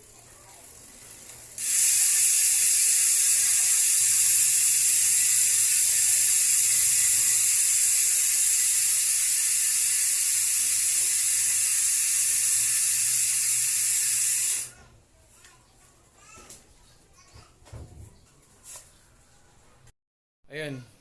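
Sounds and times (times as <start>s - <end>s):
bicycle hub freewheeling buzz: 0.0s - 14.8s.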